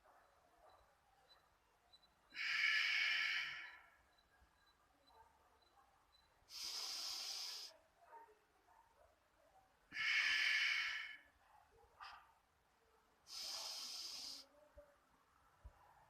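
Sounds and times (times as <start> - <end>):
person breathing deeply: 2.4 - 3.9, 6.5 - 7.7, 9.9 - 11.3, 13.3 - 14.5.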